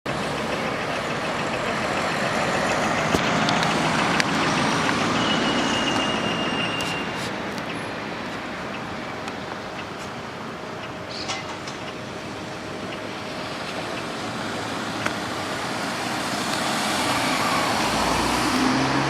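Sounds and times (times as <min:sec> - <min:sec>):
street traffic: 0:00.0 - 0:19.0
thin high squeal: 0:05.2 - 0:07.4.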